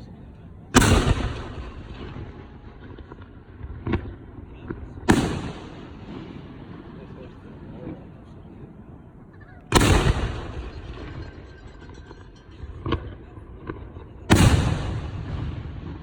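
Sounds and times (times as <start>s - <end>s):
firework shells booming: 0.7s - 16.0s
small firework pops: 0.8s - 6.4s, 9.6s - 16.0s.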